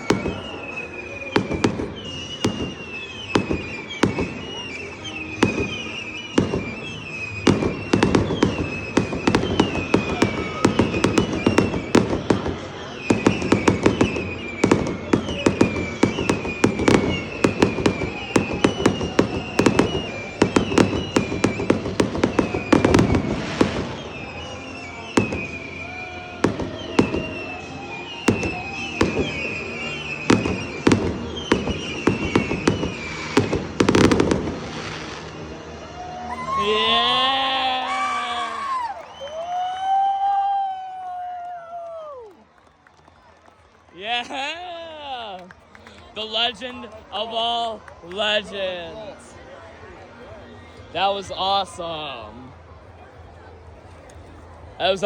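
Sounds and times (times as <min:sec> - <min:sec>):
fireworks bangs and pops: 0:00.0 - 0:35.8.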